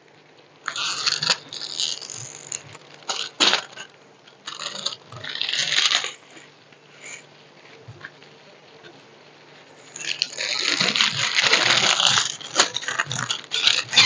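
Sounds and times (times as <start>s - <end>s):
faint fan hum: 0.0s - 14.0s
packaging crinkling and rustling: 0.7s - 6.8s, 9.6s - 14.0s.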